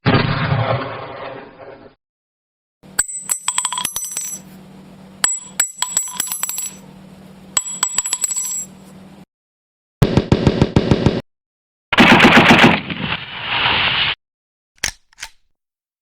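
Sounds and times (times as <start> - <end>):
small metal bell ringing: 3.0 - 4.5, 7.6 - 8.7.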